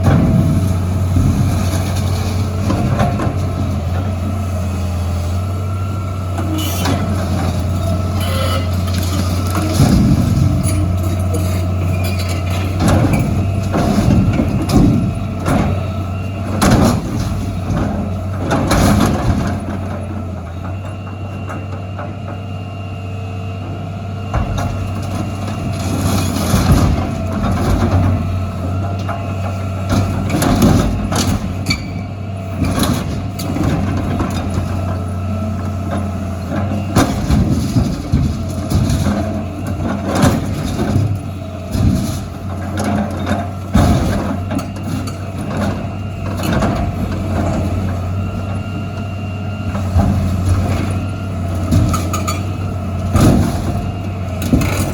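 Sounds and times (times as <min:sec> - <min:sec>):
diesel excavator engine: 0:00.0 - 0:54.9
metal crunches and clanks: 0:06.4 - 0:19.7, 0:49.8 - 0:54.9.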